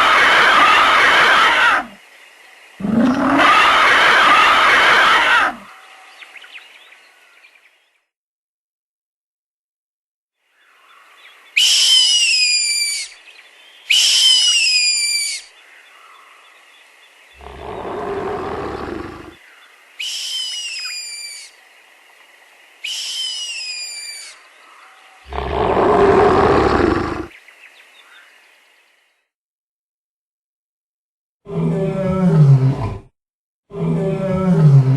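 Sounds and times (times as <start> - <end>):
high shrieking creature calls: 0.0 - 2.0, 2.8 - 5.7, 13.9 - 15.5, 25.3 - 27.3
faint steady background tone: 0.0 - 8.1, 10.4 - 29.3
deep roar: 2.8 - 5.6, 17.4 - 19.4, 25.3 - 27.3, 33.7 - 34.9.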